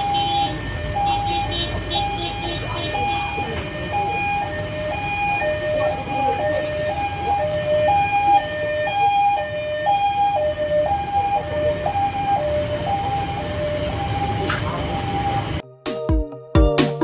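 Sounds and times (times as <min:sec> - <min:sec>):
two-tone emergency siren: 0:00.0 - 0:15.6.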